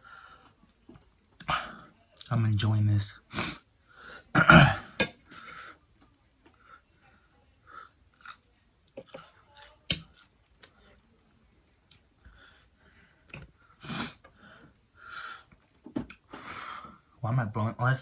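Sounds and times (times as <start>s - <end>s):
man coughing: 4.3s - 5.0s.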